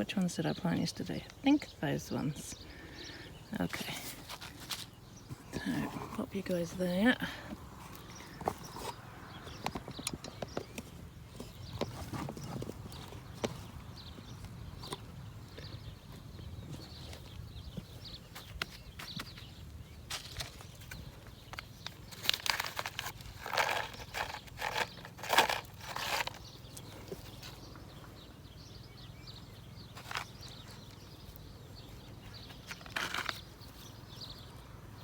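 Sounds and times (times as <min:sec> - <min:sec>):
hands scraping garden soil: 0:02.2 - 0:15.0, 0:18.0 - 0:27.8, 0:29.7 - 0:34.4.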